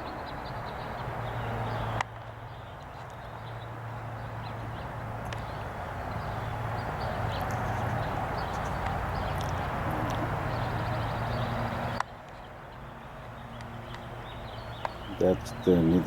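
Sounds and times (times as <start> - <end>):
faint ticks: 5.2 - 5.5.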